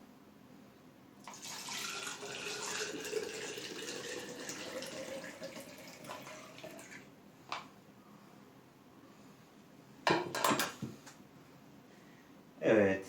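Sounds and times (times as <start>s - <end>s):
syrup trickling into a jar: 1.2s - 7.0s.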